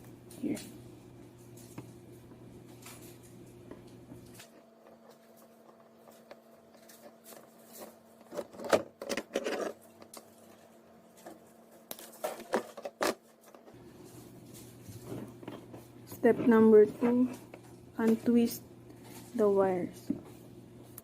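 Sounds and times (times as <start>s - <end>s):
plastic cable crackling rustles: 2.6s - 18.3s.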